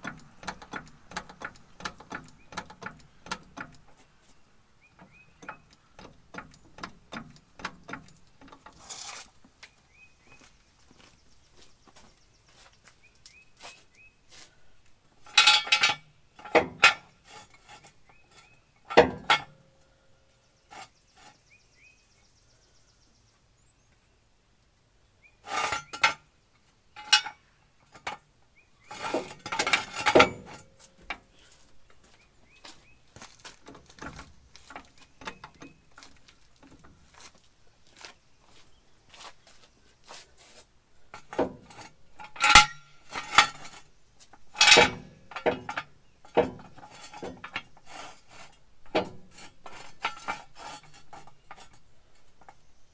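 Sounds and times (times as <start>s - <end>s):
loud metal clatters: 0.0s - 3.9s, 28.9s - 30.8s, 41.1s - 52.6s
metal tools clinking and clanking: 0.0s - 3.9s, 15.2s - 19.6s, 25.5s - 26.2s, 27.0s - 28.2s, 28.9s - 31.3s, 41.1s - 52.6s.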